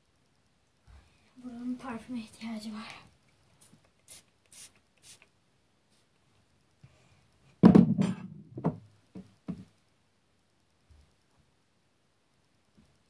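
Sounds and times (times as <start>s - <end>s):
knocks on a hard surface: 7.6s - 9.7s.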